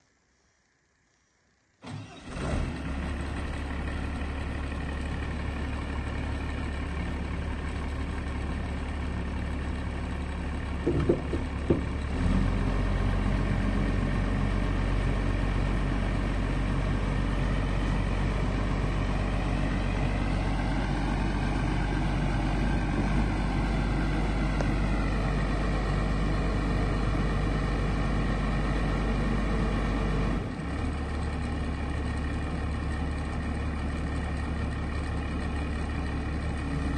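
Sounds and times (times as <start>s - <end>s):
diesel engine running: 1.8s - 36.9s
clunks: 10.8s - 12.1s.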